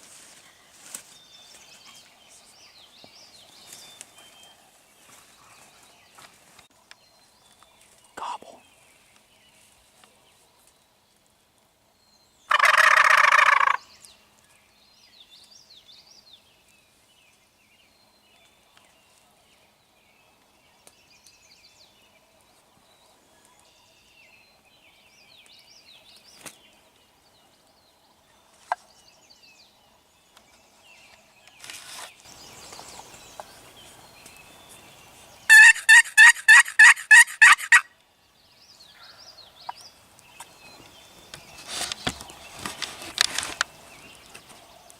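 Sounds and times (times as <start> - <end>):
rustling: 0.0 - 2.5, 31.5 - 34.9, 41.4 - 44.7
turkey gobbling: 12.5 - 13.8, 35.5 - 37.9
turkey yelps: 12.5 - 13.8, 35.5 - 37.9.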